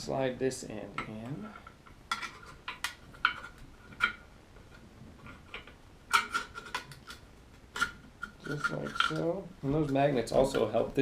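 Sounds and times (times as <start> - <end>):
metal parts clicking and knocking: 5.2 - 10.7.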